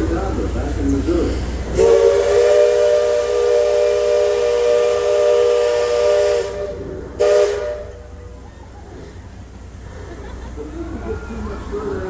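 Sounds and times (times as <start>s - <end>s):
steam hissing: 0.0s - 12.0s
steam whistle chord: 1.8s - 8.0s.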